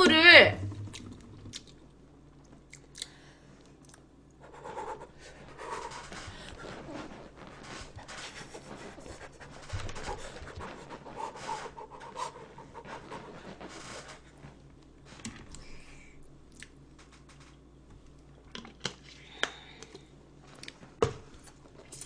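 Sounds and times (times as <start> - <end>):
rustling and scraping: 5.2 - 15.5.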